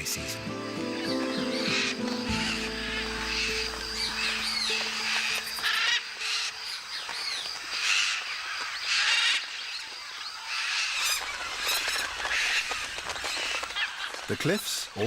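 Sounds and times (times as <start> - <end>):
parrots squawking: 1.0 - 8.2.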